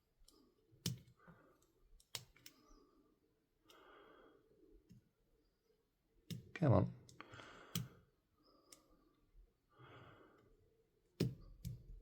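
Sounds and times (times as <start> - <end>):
small plastic clicks: 2.0 - 2.6.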